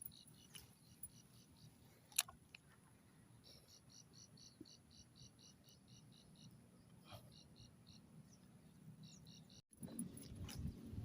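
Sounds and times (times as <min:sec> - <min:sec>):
insect chirping: 0:00.0 - 0:02.2, 0:03.3 - 0:08.4, 0:09.0 - 0:10.3.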